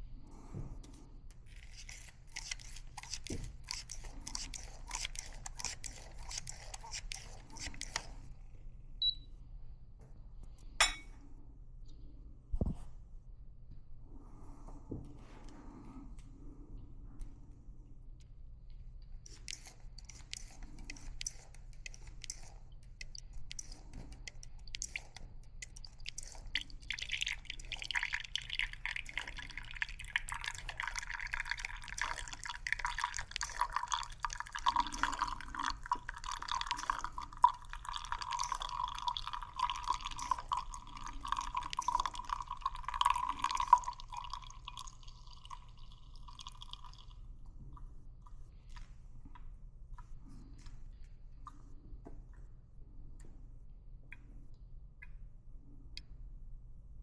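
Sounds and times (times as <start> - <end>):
liquid pouring into a vessel: 1.5 - 8.2, 23.0 - 47.3.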